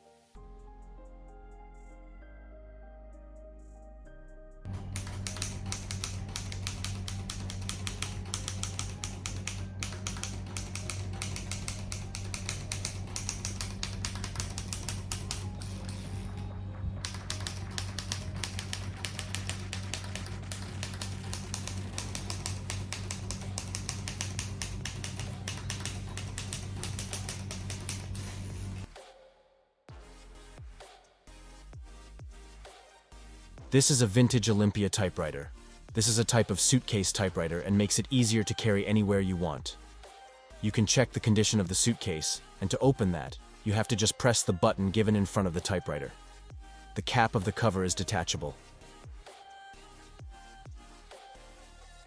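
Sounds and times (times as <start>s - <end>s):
steady low hum: 4.7s - 28.9s
typewriter keys striking: 4.7s - 28.9s.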